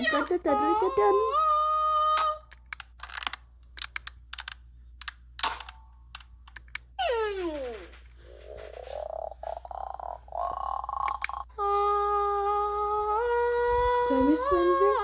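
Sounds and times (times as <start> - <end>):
child humming: 8.3 - 15.0.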